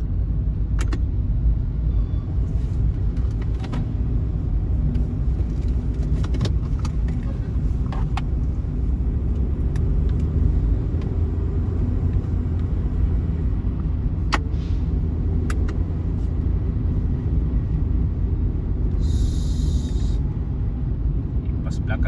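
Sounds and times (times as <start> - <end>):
bus engine and road rumble: 0.0 - 22.0
air hiss: 19.0 - 20.2.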